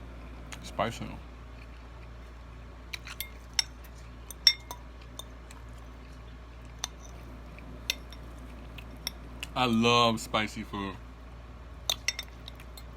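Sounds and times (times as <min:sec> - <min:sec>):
faint steady hum: 0:00.0 - 0:12.9
cutlery clinking against a bowl: 0:03.0 - 0:05.4, 0:06.8 - 0:07.2, 0:07.8 - 0:09.2, 0:11.9 - 0:12.9.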